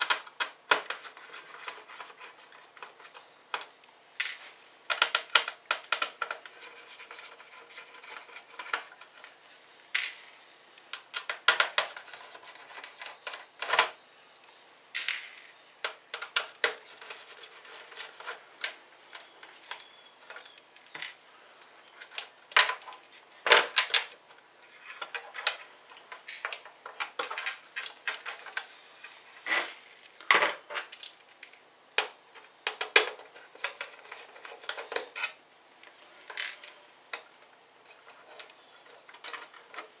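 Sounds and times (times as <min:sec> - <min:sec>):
clicks and scraping of plastic parts: 0:00.0 - 0:21.2, 0:21.8 - 0:40.0.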